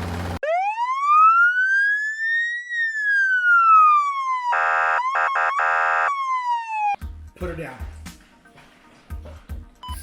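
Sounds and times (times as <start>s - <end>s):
emergency vehicle siren wailing: 0.4s - 7.0s
buzzy horn blasts: 4.6s - 6.1s.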